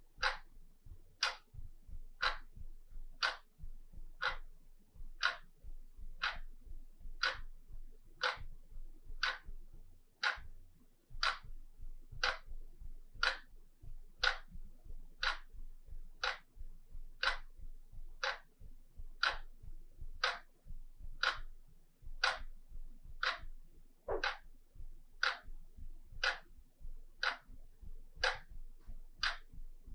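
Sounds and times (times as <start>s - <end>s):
wall clock ticking: 0.0s - 29.9s.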